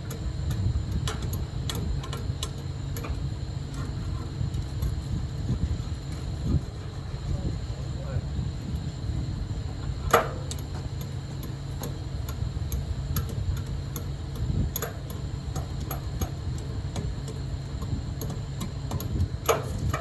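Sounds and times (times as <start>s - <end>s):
heavy machinery droning: 0.0s - 20.0s
light metallic ticks: 10.1s - 20.0s.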